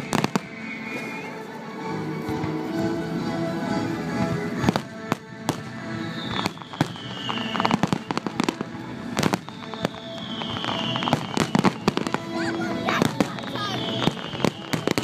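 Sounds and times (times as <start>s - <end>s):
falling firework whistles: 0.0s - 1.4s, 5.9s - 15.0s
fireworks bangs: 0.0s - 1.4s, 4.5s - 15.0s
music: 0.0s - 15.0s.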